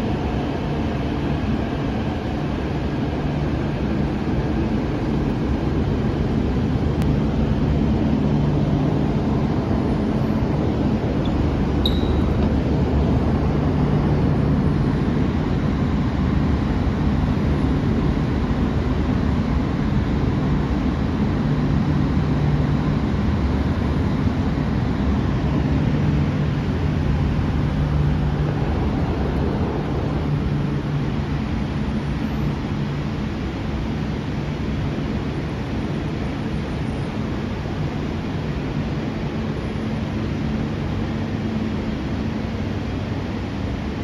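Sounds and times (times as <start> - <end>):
train rumbling: 0.0 - 44.0
low hum: 1.4 - 16.9.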